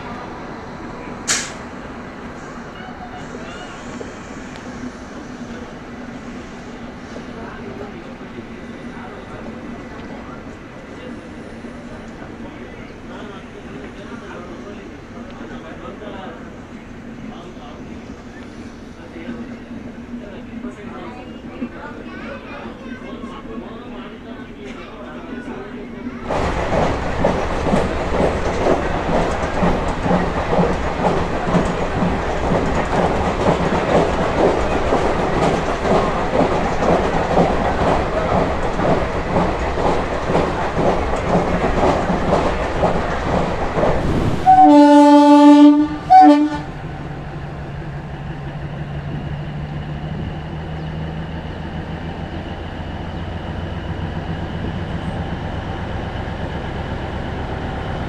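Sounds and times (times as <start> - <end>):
train wheels clattering: 26.3 - 45.1
locomotive horn blasts: 44.4 - 46.7.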